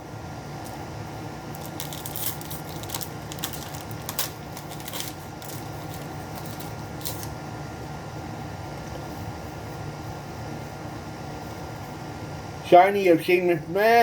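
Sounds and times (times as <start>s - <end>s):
steady low hum: 0.0s - 14.0s
trading cards scraping: 1.6s - 7.3s.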